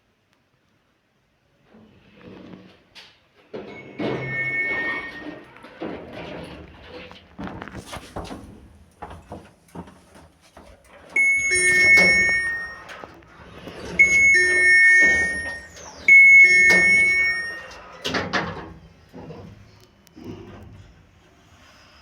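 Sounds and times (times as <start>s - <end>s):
electronic two-tone chime: 3.8s - 5.4s, 11.2s - 13.0s, 14.0s - 17.8s.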